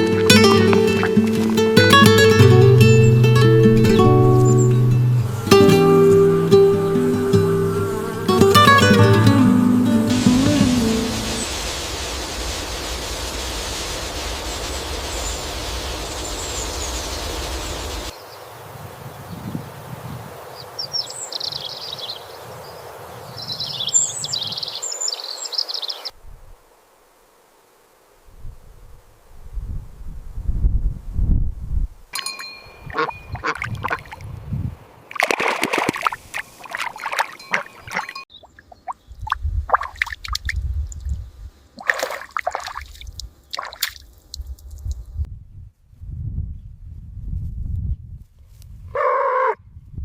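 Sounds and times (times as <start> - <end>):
water splashing and dripping: 0.0 - 2.8, 8.4 - 18.1, 32.8 - 34.3, 35.0 - 41.2, 41.8 - 45.0
small birds chirping: 0.0 - 9.4, 14.4 - 18.4, 20.6 - 26.1, 36.4 - 45.0.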